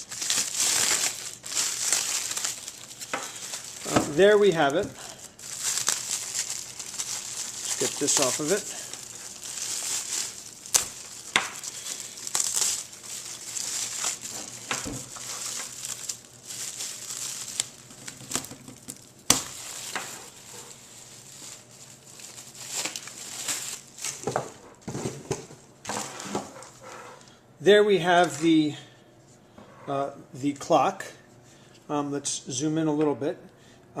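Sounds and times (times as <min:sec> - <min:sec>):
packaging wrap crinkling: 0:00.0 - 0:25.1, 0:25.8 - 0:27.3.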